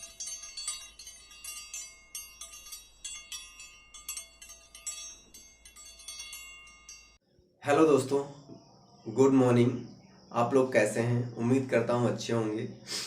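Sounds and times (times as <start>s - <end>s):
chimes tinkling: 0.0s - 7.2s.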